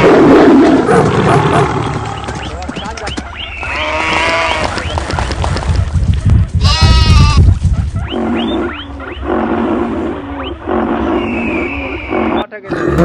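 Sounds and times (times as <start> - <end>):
rumble of many hooves: 0.0 - 12.6
high animal call: 1.4 - 5.0, 6.6 - 13.0.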